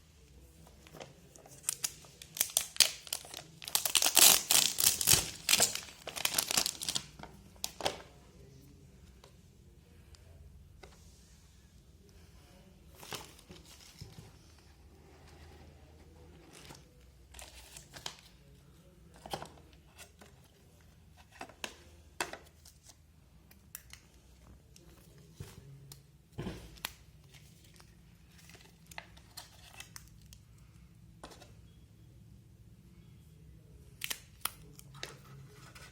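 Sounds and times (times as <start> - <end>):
packaging crinkling and tearing: 1.6 - 7.1.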